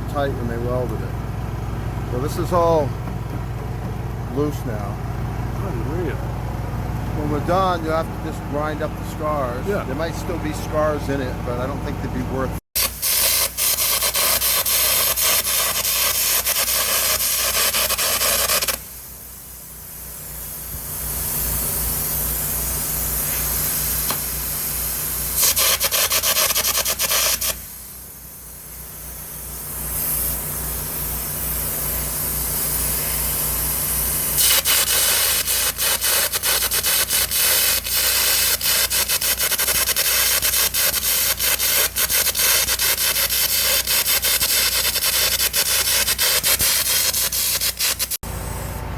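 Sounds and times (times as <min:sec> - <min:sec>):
steady hum: 0:00.0 - 0:12.6
crackling arc with air hiss: 0:12.8 - 0:48.7.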